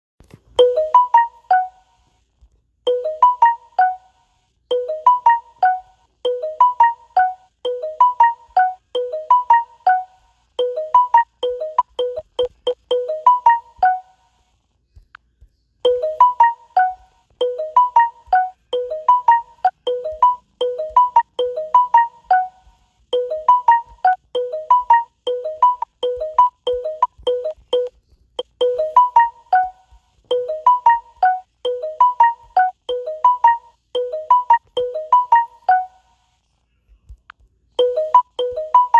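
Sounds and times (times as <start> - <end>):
phone notification jingle: 0.6 - 1.8, 2.9 - 4.1, 4.7 - 14.1, 15.9 - 22.6, 23.2 - 36.0, 37.8 - 38.9.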